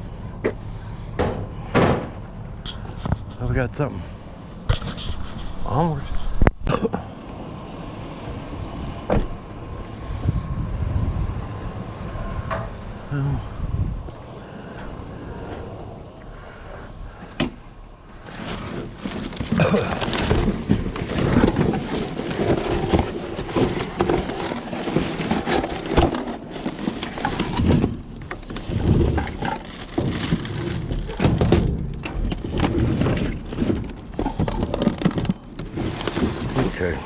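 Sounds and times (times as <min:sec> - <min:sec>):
debris clattering and rustling: 0:17.2 - 0:37.0.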